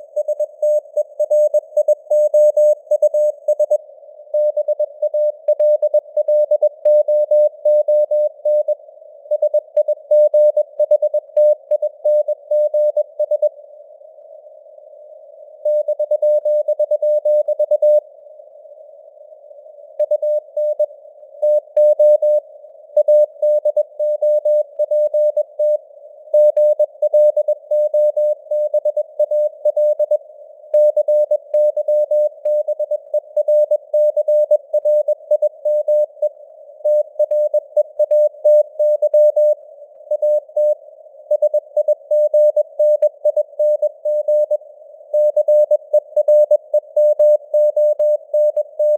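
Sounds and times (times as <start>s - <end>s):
morse code tone: 45.2s - 48.9s.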